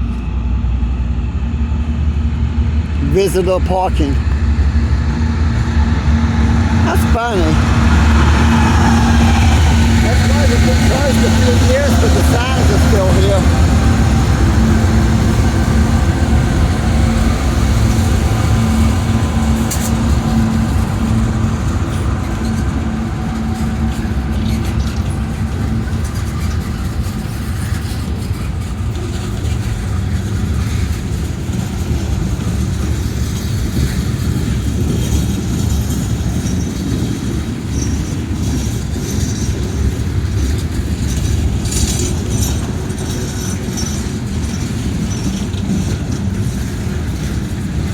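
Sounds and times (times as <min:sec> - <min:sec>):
diesel engine note: 0:00.0 - 0:26.0
train rumbling on rails: 0:00.0 - 0:47.9.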